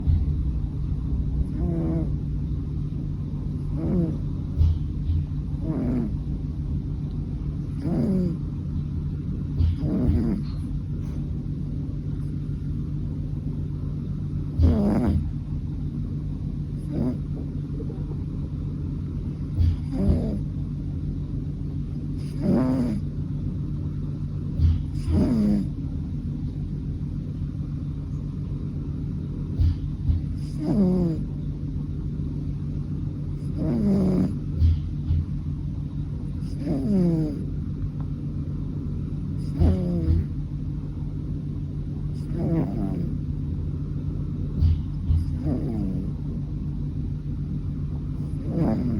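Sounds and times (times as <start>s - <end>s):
steady low hum: 0.0s - 48.9s
cat snoring: 1.4s - 2.3s, 3.6s - 4.8s, 5.5s - 6.4s, 7.6s - 8.5s, 9.6s - 11.2s, 14.5s - 15.4s, 16.8s - 18.0s, 19.4s - 20.5s, 22.1s - 23.1s, 24.6s - 25.8s, 29.6s - 31.3s, 33.3s - 34.8s, 36.3s - 37.5s, 39.4s - 40.3s, 42.1s - 43.2s, 44.6s - 46.2s, 48.1s - 48.9s.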